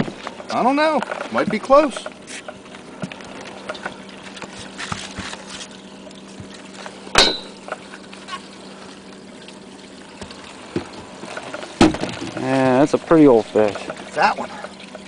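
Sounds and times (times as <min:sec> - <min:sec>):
water trickling and splashing: 0:00.0 - 0:15.0
sharp metallic clank: 0:07.1 - 0:07.6.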